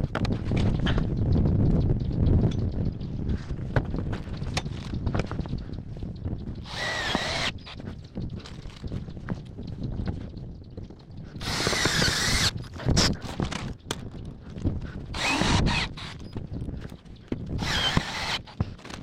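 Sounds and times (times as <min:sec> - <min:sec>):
power drill running: 0:06.6 - 0:07.5, 0:11.4 - 0:12.5, 0:15.2 - 0:16.2, 0:17.6 - 0:18.5
clicks and knocks of handling: 0:12.5 - 0:14.9.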